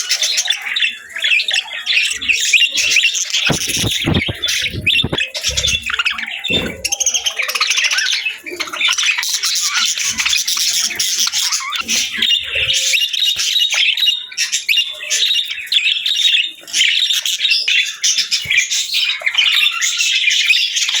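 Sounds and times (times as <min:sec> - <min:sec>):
budgerigars chirping and warbling: 0:00.0 - 0:21.0
budgerigar squawks: 0:02.1 - 0:08.3.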